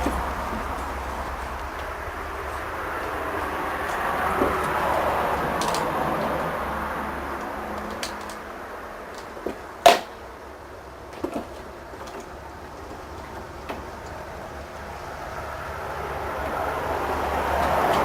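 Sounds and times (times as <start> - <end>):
steady background hiss: 0.0 - 18.0
sharp clicks and knocks: 9.1 - 10.3.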